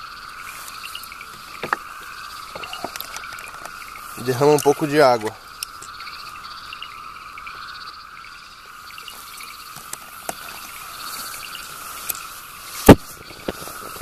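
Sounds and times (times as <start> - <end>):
frogs croaking: 0.0 - 14.0
insects chirping: 0.0 - 14.0
loud sharp pop: 12.9 - 13.6.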